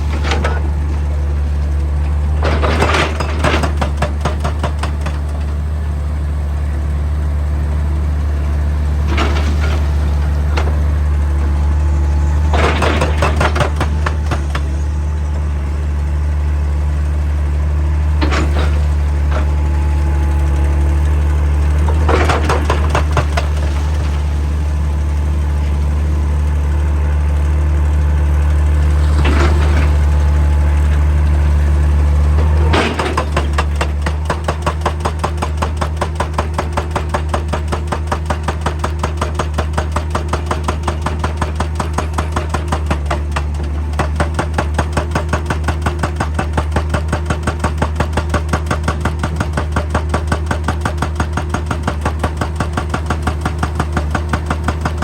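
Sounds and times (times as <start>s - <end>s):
hydraulic breaker hammering rock: 0.0s - 5.8s, 8.9s - 15.8s, 17.8s - 28.0s, 28.9s - 55.0s
diesel engine humming: 5.2s - 34.3s.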